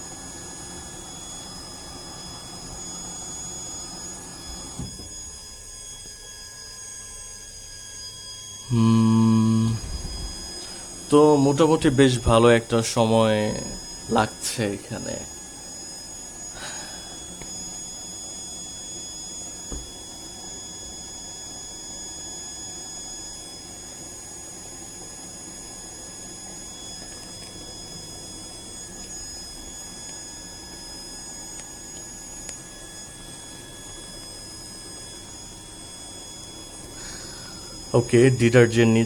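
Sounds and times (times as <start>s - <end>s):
high-pitched whine: 0.0s - 39.0s
washing machine hum: 8.7s - 18.1s.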